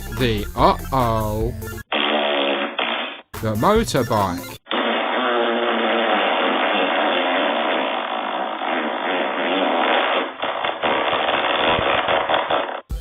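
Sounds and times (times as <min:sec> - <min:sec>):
rough fart noise: 0:01.8 - 0:03.4, 0:04.2 - 0:13.0.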